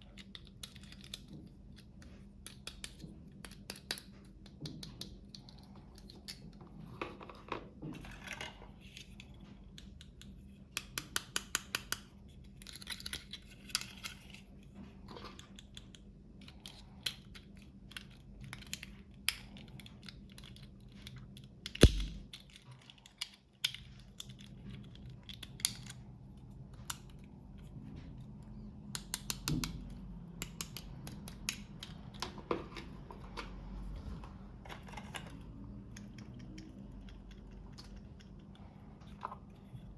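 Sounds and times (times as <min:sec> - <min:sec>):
sharp knock: 0:21.8 - 0:22.2.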